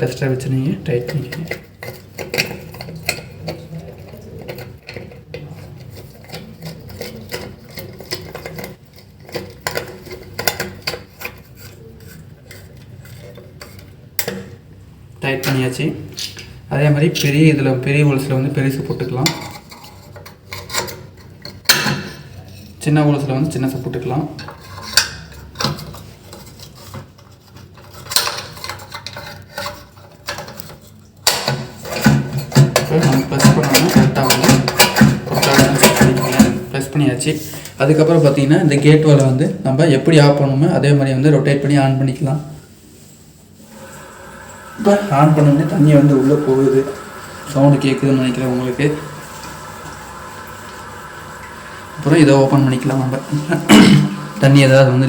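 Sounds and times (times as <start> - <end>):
screw clicking and scraping: 1.1 - 14.3.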